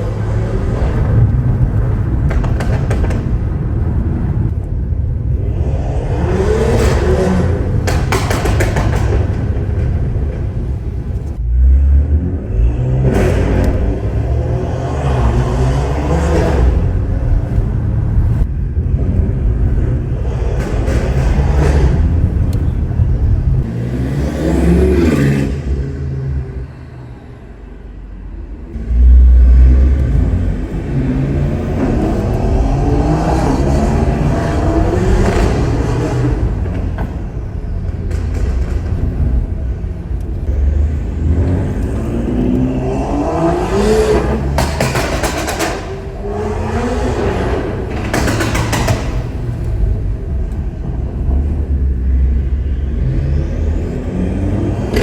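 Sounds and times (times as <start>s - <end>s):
car engine and exhaust rumble: 0.0s - 55.0s.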